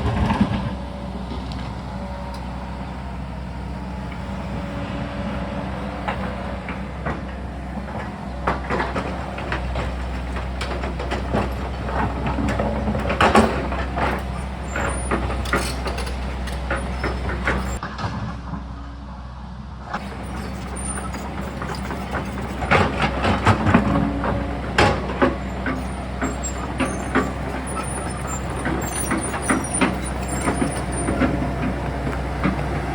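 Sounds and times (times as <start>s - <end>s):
excavator diesel engine running: 0.0s - 32.9s.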